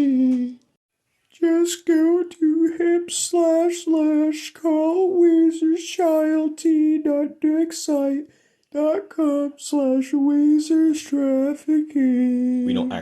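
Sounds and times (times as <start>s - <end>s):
high-pitched voice chanting: 0.0s - 0.6s, 8.8s - 13.0s.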